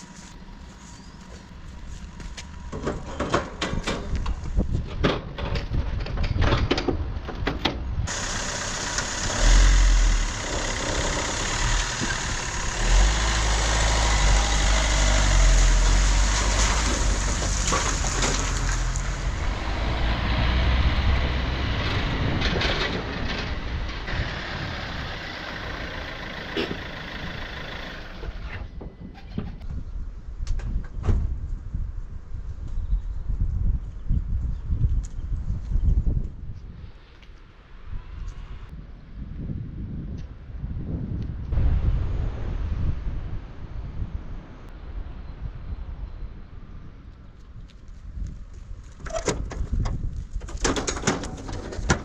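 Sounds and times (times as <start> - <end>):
machine engine running loudly: 8.1 - 15.2.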